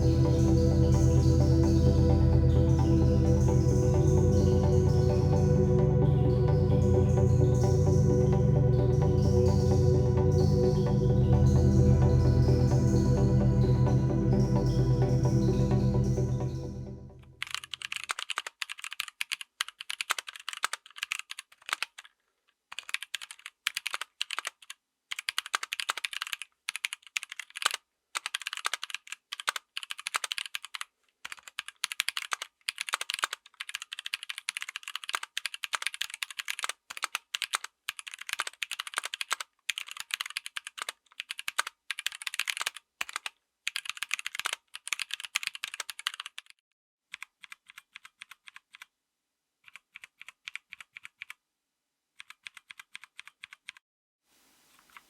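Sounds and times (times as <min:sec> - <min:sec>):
typing on mechanical keyboard: 0:17.4 - 0:48.9, 0:49.6 - 0:51.4, 0:52.2 - 0:53.8.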